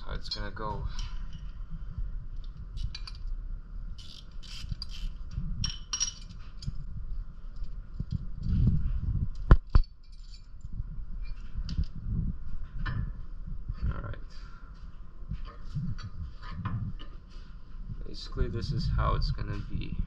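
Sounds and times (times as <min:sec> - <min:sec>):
metal tools clinking and scraping: 0:00.2 - 0:01.5, 0:04.0 - 0:06.8, 0:09.8 - 0:11.6.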